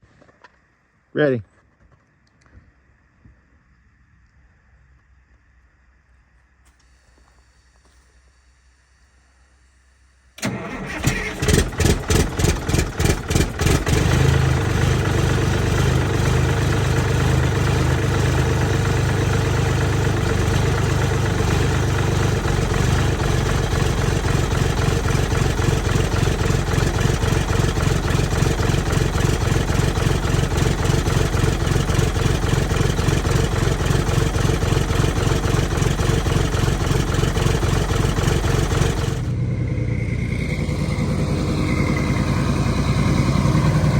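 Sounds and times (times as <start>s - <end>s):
bus engine cranking and idling: 10.3s - 43.9s.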